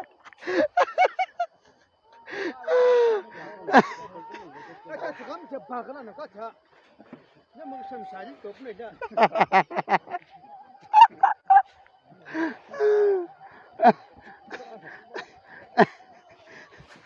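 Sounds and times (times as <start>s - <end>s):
person laughing: 0.0s - 1.4s, 10.9s - 11.6s
scattered voices and laughter: 0.0s - 17.0s.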